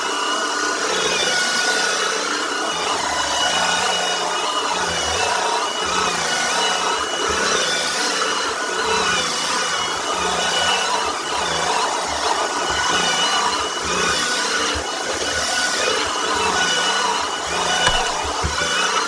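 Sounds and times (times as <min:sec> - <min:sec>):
cordless vacuum motor whine: 0:00.0 - 0:19.0.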